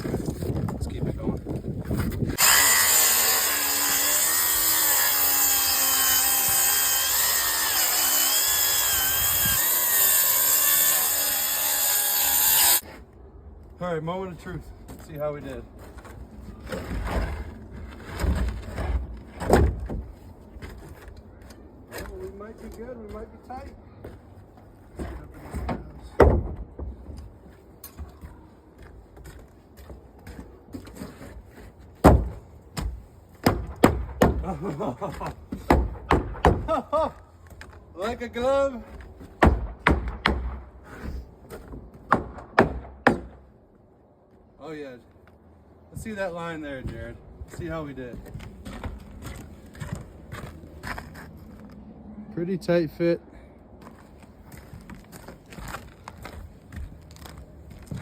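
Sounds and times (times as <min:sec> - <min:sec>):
saw cutting through wood: 0:02.4 - 0:12.9
board scraping: 0:15.8 - 0:21.1.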